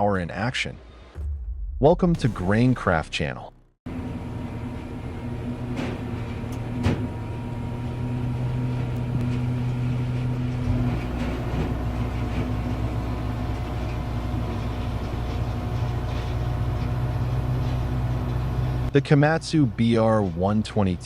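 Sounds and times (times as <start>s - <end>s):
heavy low rumble: 0.8s - 3.8s
sharp knock: 1.2s - 2.9s
diesel engine humming: 2.2s - 21.0s.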